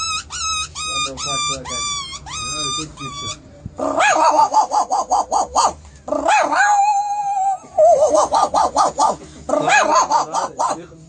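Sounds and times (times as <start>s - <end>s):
person imitating dog yips: 0.0s - 10.8s
person imitating dog whine: 3.8s - 10.3s.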